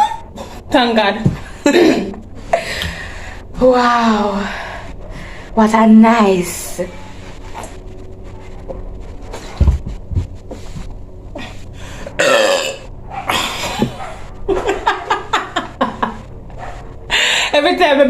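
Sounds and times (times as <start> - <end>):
person belching: 12.2 - 13.9.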